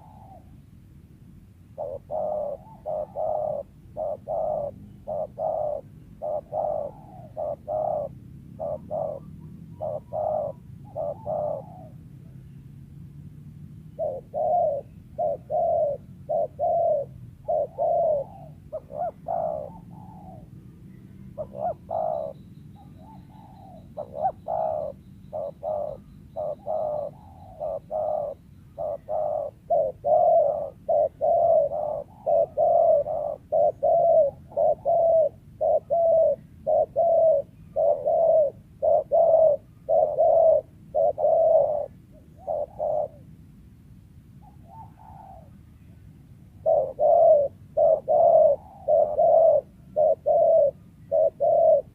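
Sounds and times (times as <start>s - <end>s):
dove cooing: 0.0s - 0.7s, 1.7s - 12.8s, 13.9s - 43.5s, 44.3s - 51.9s.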